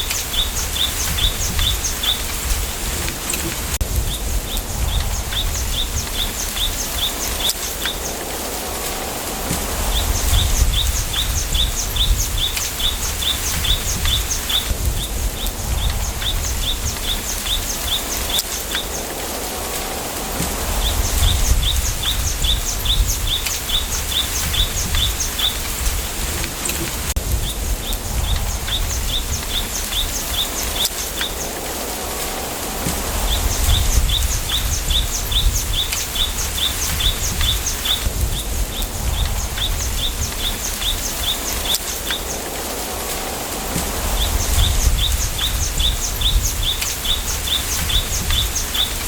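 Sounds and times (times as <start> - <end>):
wind rumble on microphone: 0.0 - 49.0
wind through bamboo: 0.0 - 49.0.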